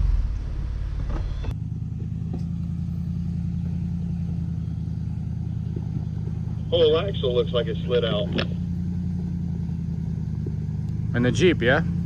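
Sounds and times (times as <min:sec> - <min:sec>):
outdoor noise: 0:00.0 - 0:12.0
vehicle engine idling: 0:00.0 - 0:12.0.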